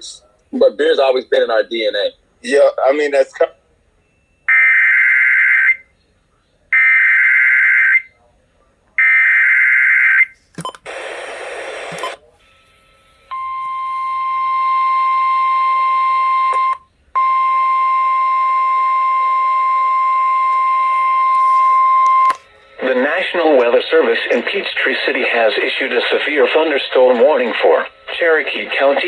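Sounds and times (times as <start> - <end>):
radio hiss: 10.9 - 12.6, 22.6 - 29.0
steady attention tone: 17.2 - 29.0.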